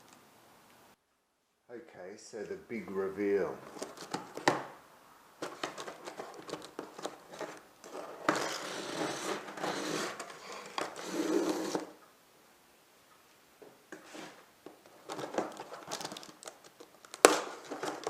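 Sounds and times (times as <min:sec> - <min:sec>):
packaging rustling and crinkling: 0:03.6 - 0:04.7, 0:05.4 - 0:12.0, 0:13.9 - 0:18.0.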